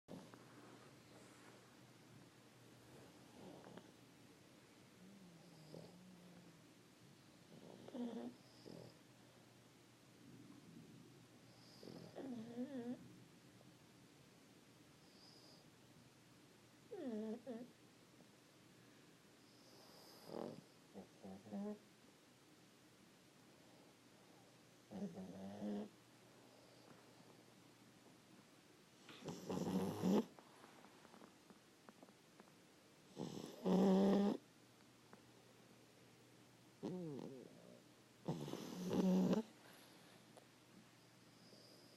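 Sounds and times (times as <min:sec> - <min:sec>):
dog snoring faintly: 0:00.1 - 0:01.7, 0:02.8 - 0:04.1, 0:04.9 - 0:06.7, 0:07.4 - 0:09.4, 0:10.5 - 0:13.1, 0:15.0 - 0:15.7, 0:16.9 - 0:17.8, 0:19.4 - 0:21.9, 0:23.5 - 0:27.4, 0:29.0 - 0:31.3, 0:33.1 - 0:34.5, 0:36.8 - 0:40.4, 0:41.2 - 0:41.9.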